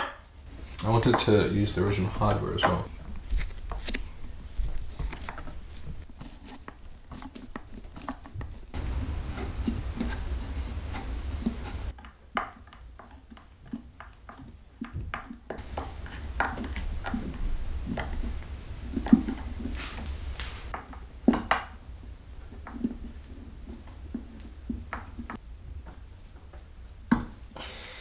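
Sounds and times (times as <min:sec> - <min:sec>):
background hiss: 0:00.0 - 0:06.0, 0:08.5 - 0:12.0, 0:15.6 - 0:28.0
wooden chair parts tapping: 0:00.0 - 0:13.1, 0:15.1 - 0:21.8.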